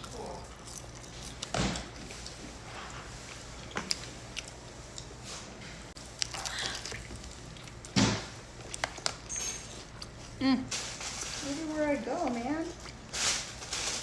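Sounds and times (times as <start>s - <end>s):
person chewing and biting food: 0.0s - 2.5s, 6.1s - 8.0s.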